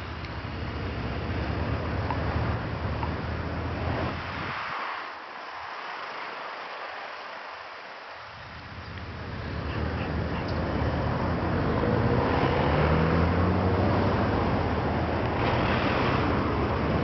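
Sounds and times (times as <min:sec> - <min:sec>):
engine humming: 0:00.0 - 0:04.6, 0:08.2 - 0:17.0.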